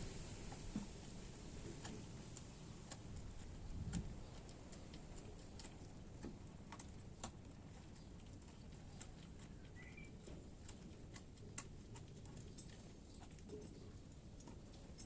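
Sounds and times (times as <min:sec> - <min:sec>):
low steady hum: 0:00.0 - 0:15.0
small clicks and ticks: 0:01.6 - 0:15.0
short chirp: 0:09.8 - 0:10.1.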